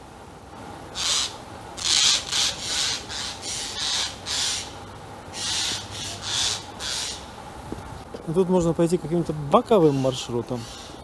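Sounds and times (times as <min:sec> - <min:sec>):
bird harsh rasping calls: 0:00.9 - 0:07.4, 0:09.7 - 0:11.0.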